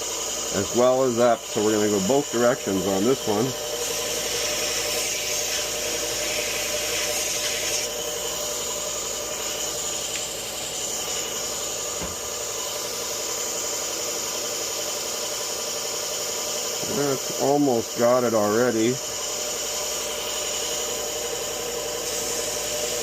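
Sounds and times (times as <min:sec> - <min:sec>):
sharpening grinder grinding blade: 0:00.0 - 0:23.0.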